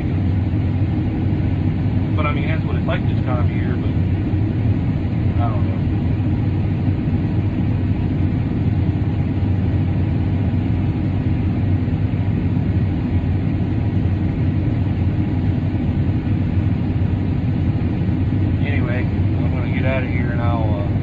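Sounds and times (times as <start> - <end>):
vehicle engine droning: 0.0 - 21.0.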